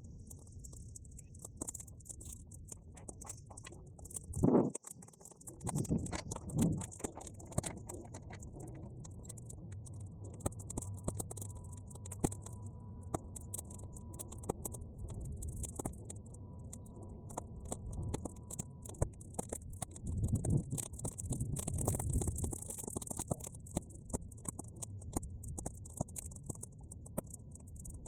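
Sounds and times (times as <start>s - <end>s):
wind rumble: 4.3s - 4.8s, 5.6s - 7.0s.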